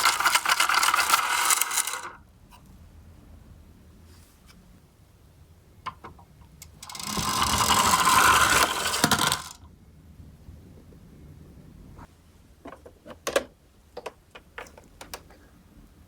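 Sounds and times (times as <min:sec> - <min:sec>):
toy car wheels rattling on track: 0:00.0 - 0:02.2, 0:06.8 - 0:09.6.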